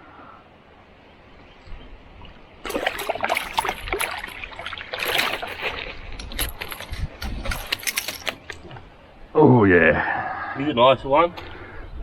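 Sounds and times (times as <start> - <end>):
water splashing: 2.1 - 9.0
knocks and clatters on a kayak: 2.8 - 8.9.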